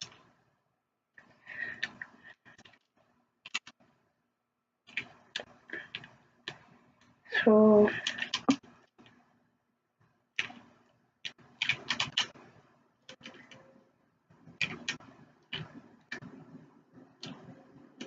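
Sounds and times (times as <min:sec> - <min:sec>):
plastic cubes clicking: 0:08.0 - 0:09.2, 0:14.6 - 0:16.2.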